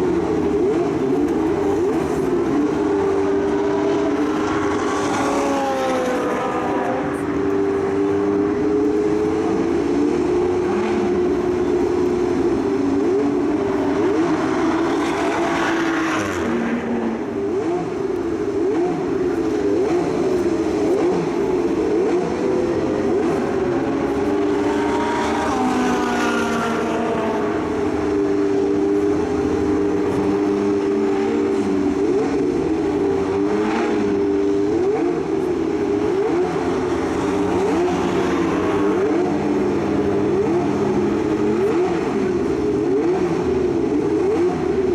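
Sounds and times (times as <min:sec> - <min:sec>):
car engines passing: 0:00.0 - 0:44.9.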